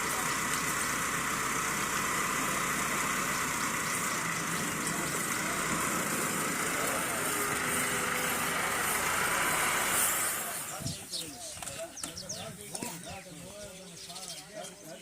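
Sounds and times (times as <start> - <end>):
engine running: 0.0 - 11.3
faint voices: 4.2 - 15.0.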